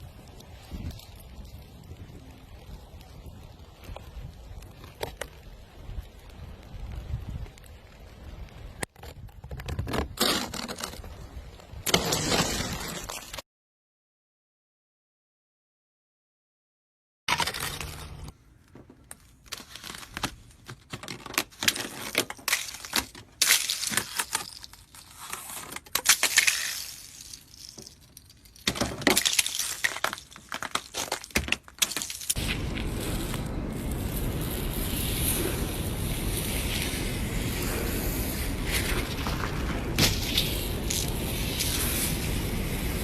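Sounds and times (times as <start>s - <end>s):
ice cracking and scraping off car: 0.0s - 7.7s, 8.6s - 13.4s, 17.3s - 18.4s, 19.0s - 43.0s
steady rushing noise: 32.4s - 43.0s.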